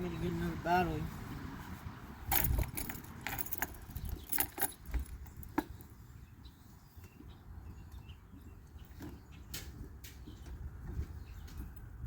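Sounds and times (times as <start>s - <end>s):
metallic clicks and rattles: 2.3s - 5.7s.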